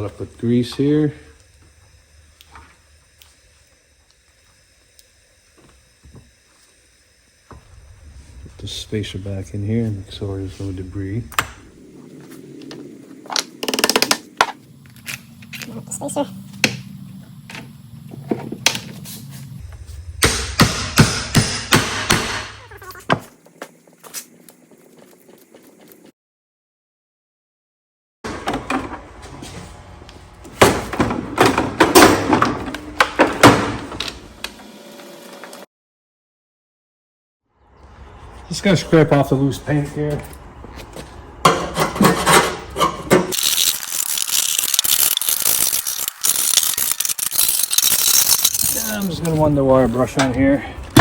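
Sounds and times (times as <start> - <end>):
low hum: 0.1 - 13.4, 14.7 - 23.0
hammer striking metal: 20.2 - 22.6.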